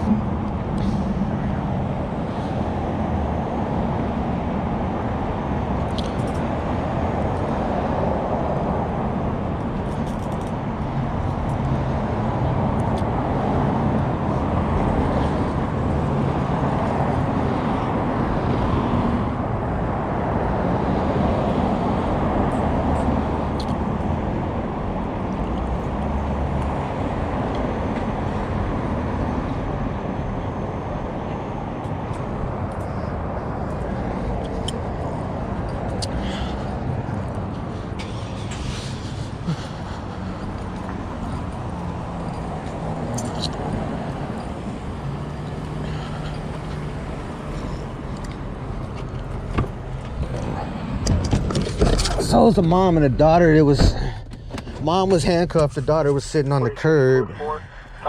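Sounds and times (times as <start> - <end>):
car engine and road noise: 0.0 - 58.0.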